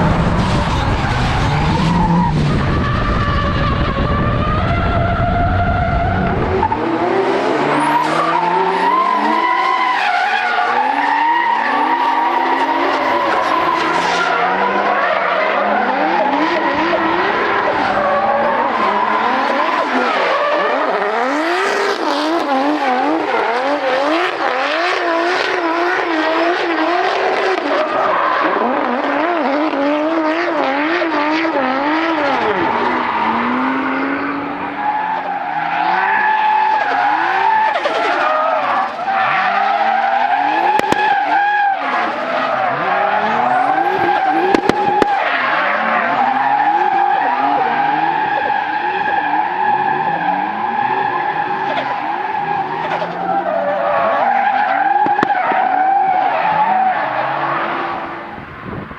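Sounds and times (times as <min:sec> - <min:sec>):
car engines revving hard: 0:00.0 - 0:58.9
tyres skidding: 0:00.0 - 0:58.9
sharp cracks: 0:40.6 - 0:41.4, 0:44.3 - 0:45.5, 0:55.0 - 0:55.6.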